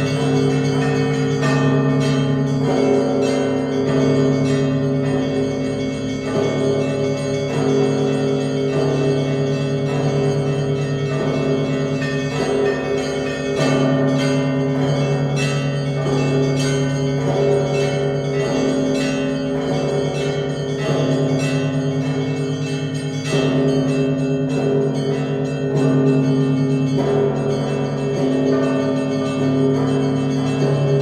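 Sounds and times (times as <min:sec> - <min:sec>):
deep church bell: 0:00.0 - 0:31.0
smaller bells pealing: 0:00.0 - 0:31.0.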